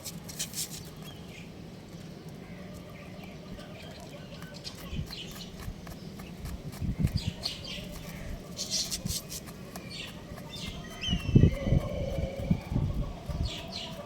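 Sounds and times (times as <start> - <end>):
young rooster chirping and squawking: 6.7 - 14.0.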